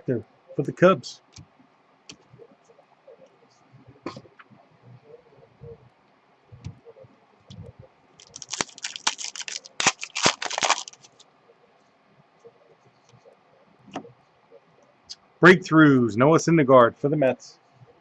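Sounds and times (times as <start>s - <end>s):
wrapper crackling and tearing: 8.2s - 11.2s.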